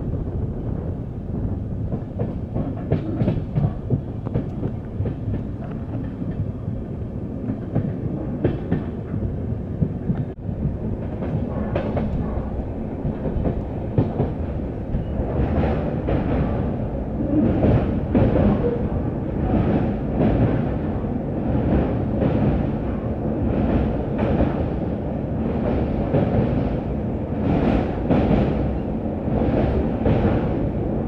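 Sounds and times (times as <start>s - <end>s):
train wheels rumbling on rails: 0.0s - 31.0s
clicks and knocks from track: 1.4s - 6.5s, 7.5s - 16.7s.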